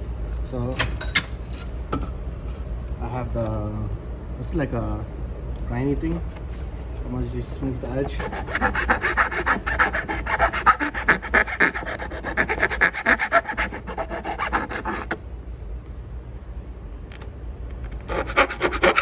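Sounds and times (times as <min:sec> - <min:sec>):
small grinding tool rasping: 0:08.0 - 0:15.2, 0:18.0 - 0:19.0.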